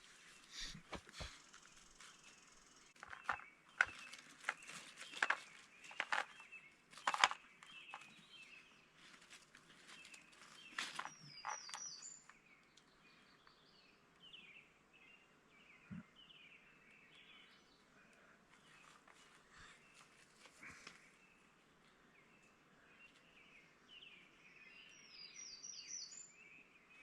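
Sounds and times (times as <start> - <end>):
bird chirping calls: 0.0 - 8.9, 9.8 - 18.0, 22.2 - 27.0
footsteps crunching through brush: 0.0 - 12.0.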